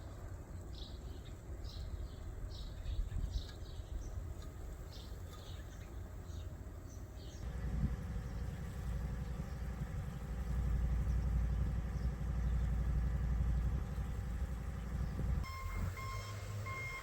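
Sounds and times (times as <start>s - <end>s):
vehicle engine rumbling: 1.8s - 17.0s
high-pitched beeping: 15.4s - 17.0s.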